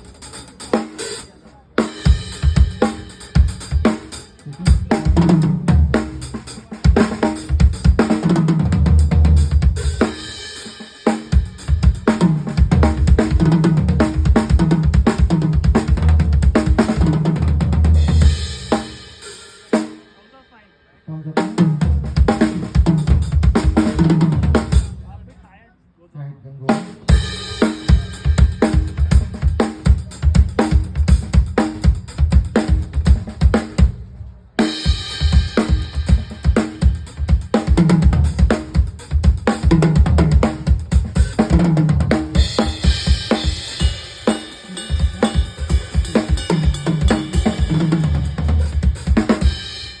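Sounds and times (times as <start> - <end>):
drum kit groove: 0.0 - 20.6, 21.3 - 25.5, 26.7 - 50.0.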